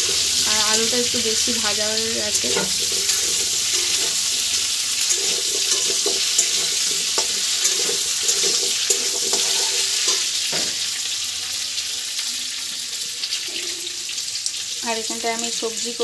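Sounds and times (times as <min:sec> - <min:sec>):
potatoes sizzling in oil: 0:00.0 - 0:16.0
spatula knocking in pan: 0:02.2 - 0:10.8.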